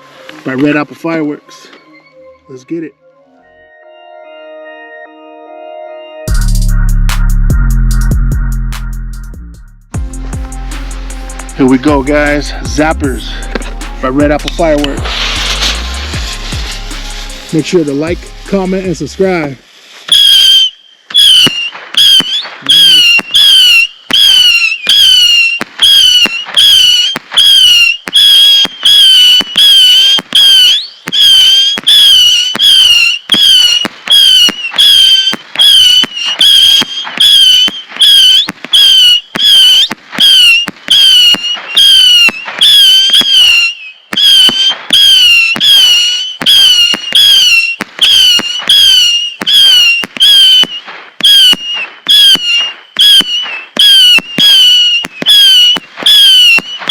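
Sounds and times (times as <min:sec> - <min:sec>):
whistling firework shots cracking: 0:11.6 - 0:56.9.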